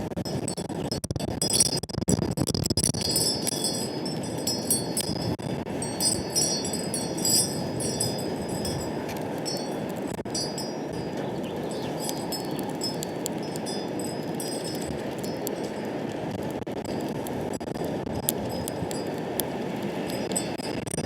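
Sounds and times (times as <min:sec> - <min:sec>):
wind buffeting microphone: 0:00.0 - 0:21.0
high tinkling tones: 0:03.0 - 0:15.8, 0:20.0 - 0:20.9.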